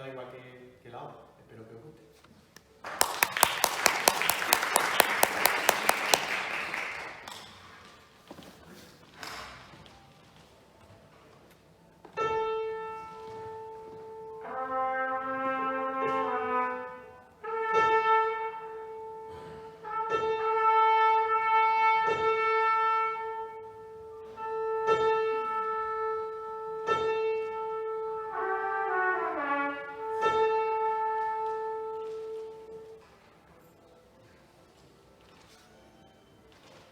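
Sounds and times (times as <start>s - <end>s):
chamber music for clarinet trumpet piano: 12.4s - 33.0s.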